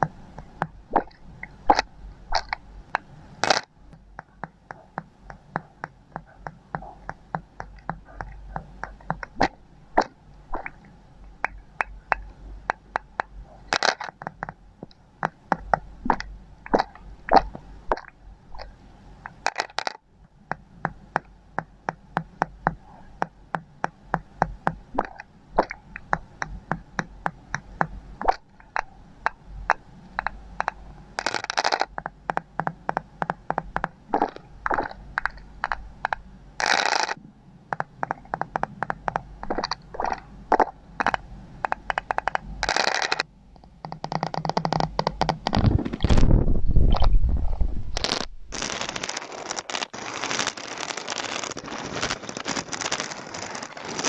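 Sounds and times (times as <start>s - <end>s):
scraping sounds: 44.7s - 54.0s.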